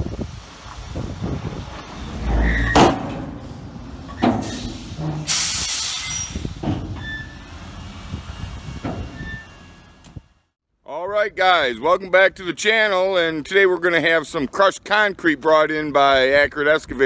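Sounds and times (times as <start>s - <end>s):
heavy machinery rumbling: 0.2s - 10.1s
clanks and knocks: 2.2s - 5.3s
air release hiss: 4.3s - 6.6s.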